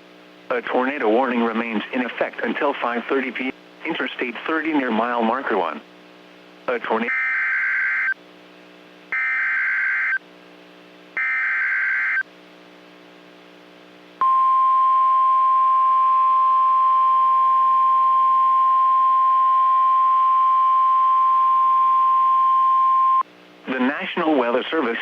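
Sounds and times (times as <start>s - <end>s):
steady alarm tone: 7.1s - 8.2s, 9.2s - 10.2s, 11.2s - 12.2s.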